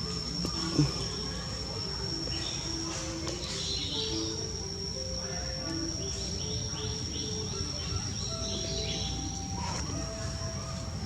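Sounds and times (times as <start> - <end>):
high-pitched insect drone: 0.0 - 11.0.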